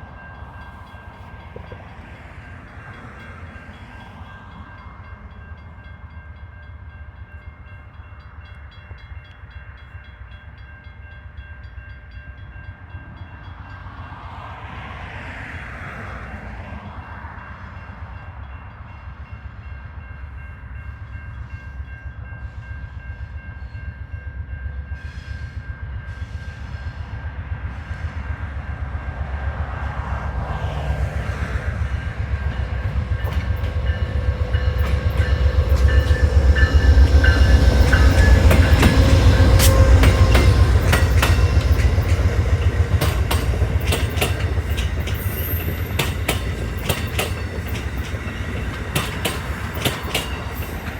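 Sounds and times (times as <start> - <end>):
diesel train rumble: 0.0 - 9.4, 10.3 - 50.9
train wheels clacking over rail joints: 31.8 - 50.9.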